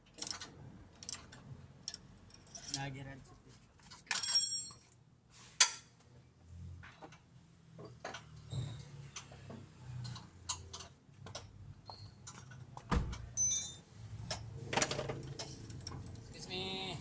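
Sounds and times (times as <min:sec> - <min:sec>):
ringing metal clink: 0:13.4 - 0:13.8.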